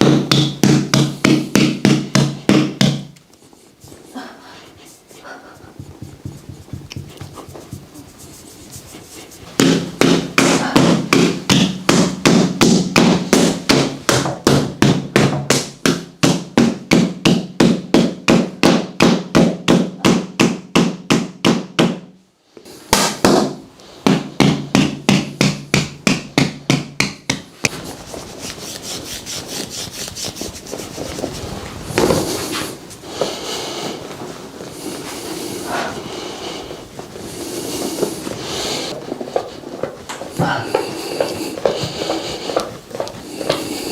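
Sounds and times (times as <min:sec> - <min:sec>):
percussive massage strikes: 0:00.0 - 0:03.3, 0:05.6 - 0:22.2, 0:22.8 - 0:31.1
soft rubbing: 0:03.2 - 0:10.3, 0:27.6 - 0:43.9.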